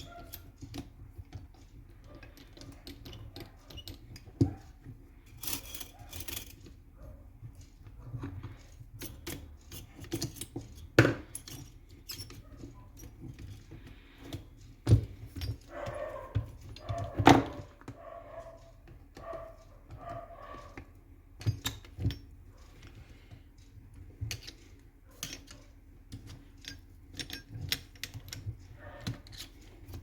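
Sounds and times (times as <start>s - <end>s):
metal parts clicking and knocking: 0.0s - 30.0s.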